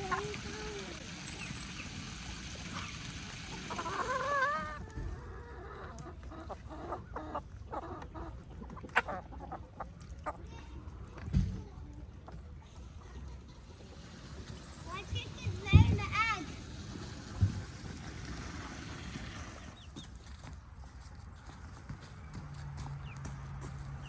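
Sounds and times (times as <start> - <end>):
chickens clucking and squawking: 0.0 - 11.1, 12.1 - 20.1.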